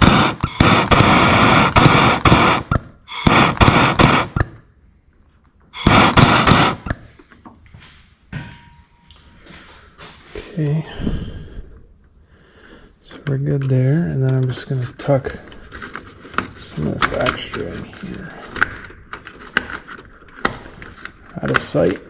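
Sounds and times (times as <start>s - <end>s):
hands rustling and scraping wiring: 4.4s - 5.9s, 6.8s - 22.0s.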